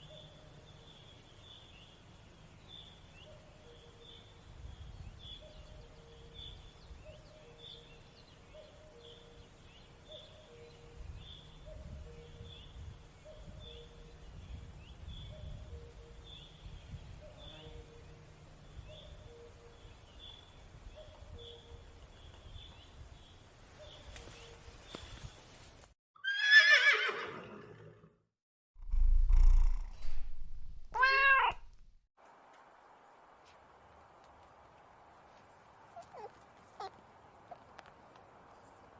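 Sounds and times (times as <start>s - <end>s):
horse whinnying: 26.2s - 27.8s
low rumble: 28.8s - 32.0s.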